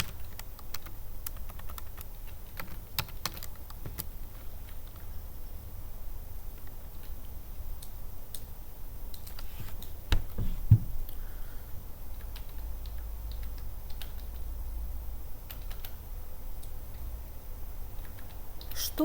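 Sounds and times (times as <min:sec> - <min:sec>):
computer keyboard typing: 0:00.0 - 0:05.1, 0:09.1 - 0:10.0, 0:12.1 - 0:14.6, 0:15.4 - 0:17.0, 0:18.0 - 0:18.8
knocks and thuds: 0:10.1 - 0:11.0.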